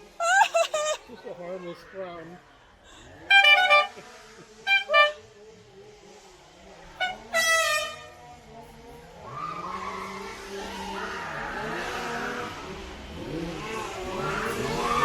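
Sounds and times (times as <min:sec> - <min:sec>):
short high horn toot: 0:04.7 - 0:05.3.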